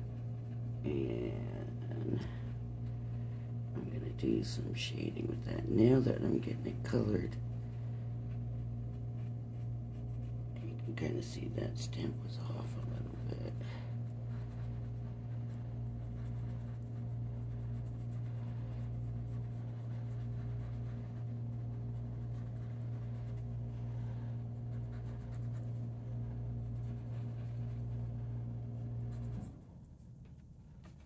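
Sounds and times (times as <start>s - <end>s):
pencil scratching on paper: 0.0s - 3.2s, 8.2s - 29.6s
steady low hum: 0.0s - 31.0s.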